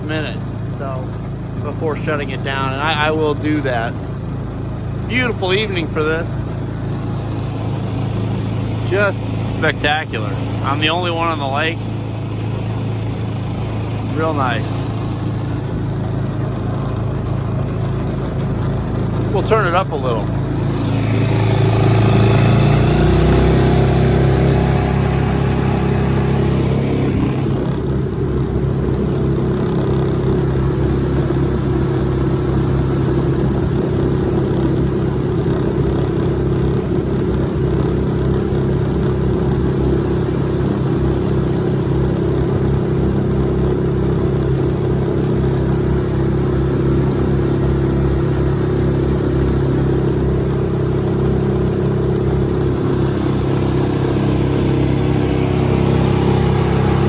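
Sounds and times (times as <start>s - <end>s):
outboard motor running: 0.0s - 57.0s.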